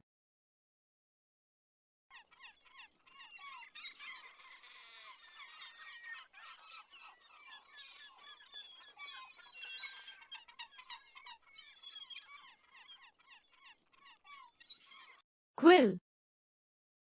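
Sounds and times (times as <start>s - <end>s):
small birds chirping: 2.1s - 15.2s.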